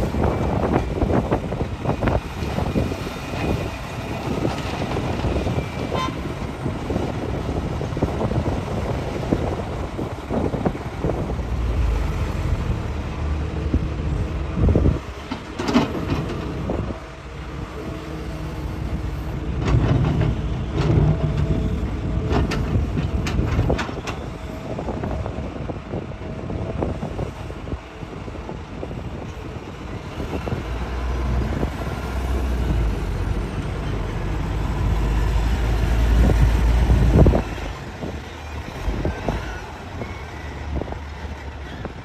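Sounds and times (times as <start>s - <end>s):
diesel engine pulling under load: 0.0s - 42.0s
excavator knocks and clanks: 14.9s - 17.0s, 19.4s - 24.4s.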